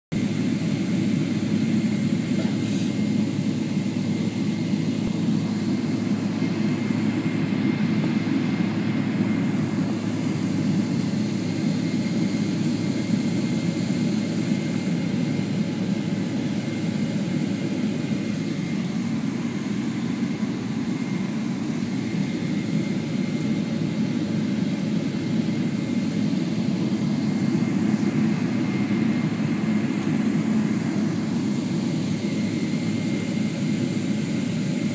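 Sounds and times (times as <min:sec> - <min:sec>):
airplane cabin jet engine rumble: 0:00.1 - 0:34.9.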